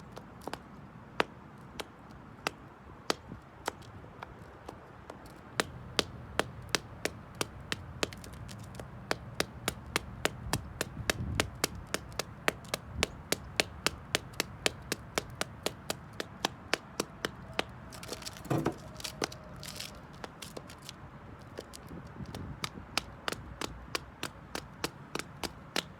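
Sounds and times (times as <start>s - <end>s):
high heels clicking on concrete: 5.1s - 25.9s
dull thump: 18.2s - 19.1s.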